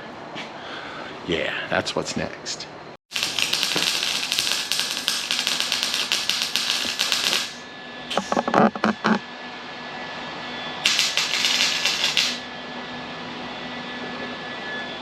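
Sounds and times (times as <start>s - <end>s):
welder crackling: 3.1s - 9.2s, 10.8s - 12.4s.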